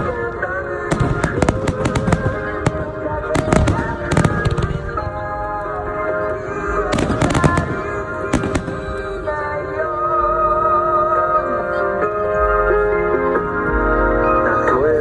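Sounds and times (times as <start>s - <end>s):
fireworks bursting: 0.0s - 10.2s
pop song: 0.0s - 15.0s.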